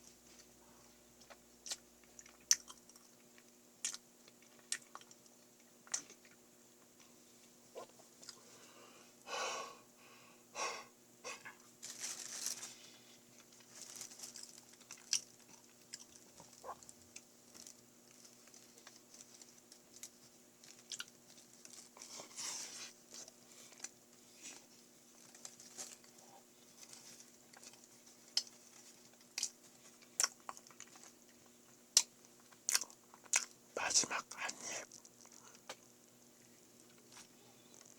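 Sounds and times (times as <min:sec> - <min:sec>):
person chewing with mouth clicks: 0:01.2 - 0:06.4, 0:14.8 - 0:17.3, 0:20.7 - 0:21.2, 0:27.4 - 0:35.9.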